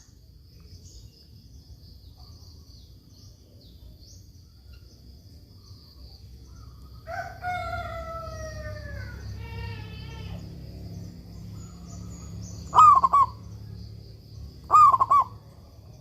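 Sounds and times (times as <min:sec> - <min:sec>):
small birds chirping: 0:00.0 - 0:16.0
long falling bird call: 0:11.5 - 0:13.7, 0:14.6 - 0:15.7.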